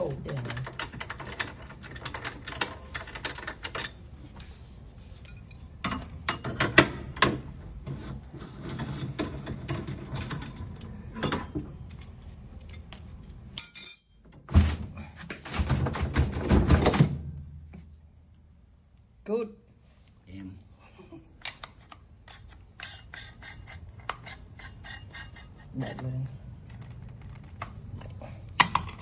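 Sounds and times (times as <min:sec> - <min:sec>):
metal tools clinking: 0:05.2 - 0:06.6, 0:11.2 - 0:14.4
knocks and rattling: 0:15.4 - 0:17.3.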